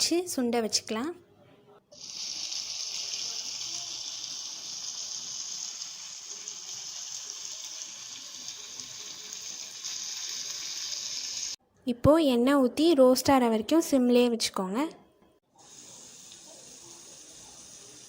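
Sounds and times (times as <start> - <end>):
meat frying in oil: 2.0 - 11.6.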